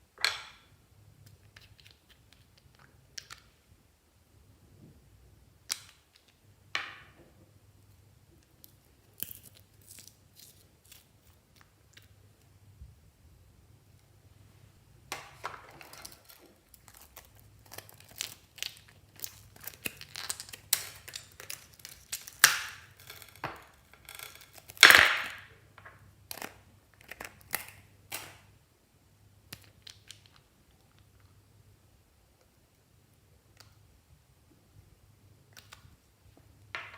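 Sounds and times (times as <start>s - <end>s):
slime squished crackling and popping: 16.6s - 25.2s.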